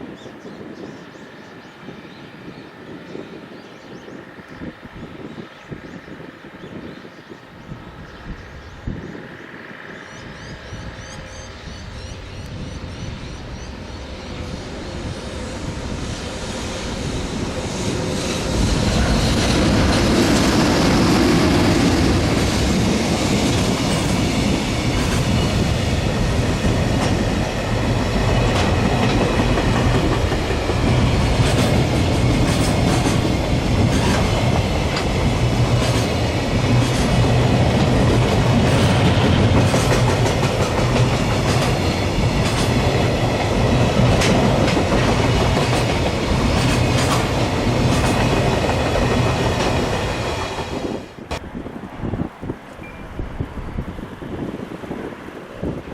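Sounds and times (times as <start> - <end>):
freight train rumble: 0.0 - 55.9
wheels clacking over rail joints: 18.4 - 51.4.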